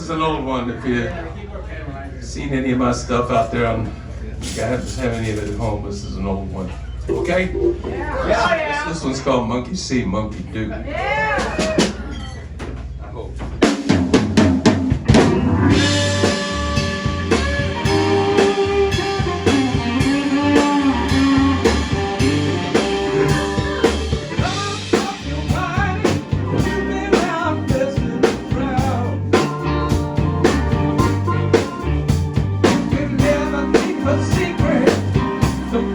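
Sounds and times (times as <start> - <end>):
blues band playing: 7.1 - 8.3, 13.6 - 35.9
electric guitar lead with bent notes: 15.0 - 35.9.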